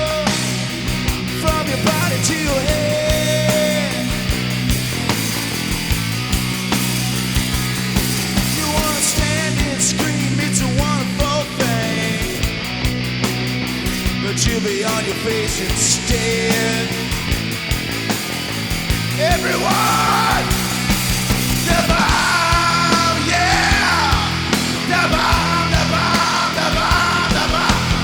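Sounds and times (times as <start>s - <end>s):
drum beat: 0.0s - 12.5s, 17.2s - 28.0s
bass: 0.0s - 28.0s
punk rock music: 0.0s - 28.0s
person singing: 19.2s - 20.9s, 21.5s - 28.0s.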